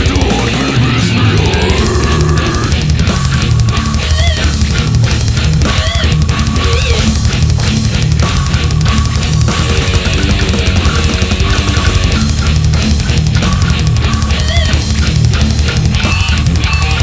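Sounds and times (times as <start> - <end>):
high-pitched guitar squeals: 0.0 - 2.9
distorted electric guitars: 0.0 - 17.0
rapid drumming: 0.0 - 17.0.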